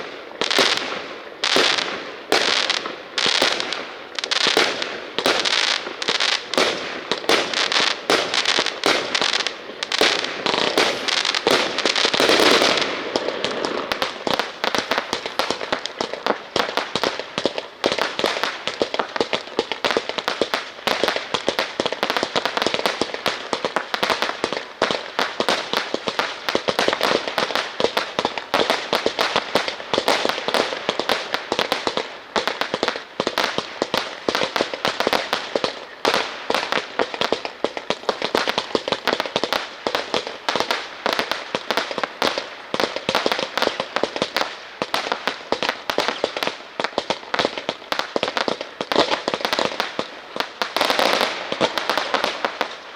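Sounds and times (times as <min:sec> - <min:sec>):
fireworks cracking and popping: 0:00.0 - 0:52.9.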